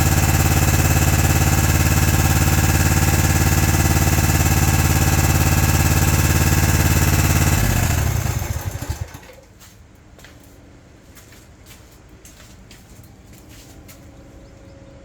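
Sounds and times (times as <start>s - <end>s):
engine running and spinning down: 0.0s - 9.4s.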